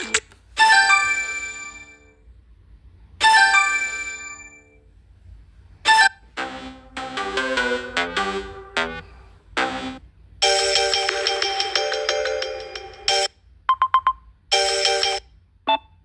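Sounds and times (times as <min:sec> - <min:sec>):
melodic ringtone: 0:00.0 - 0:02.1, 0:05.9 - 0:13.3, 0:14.5 - 0:15.2.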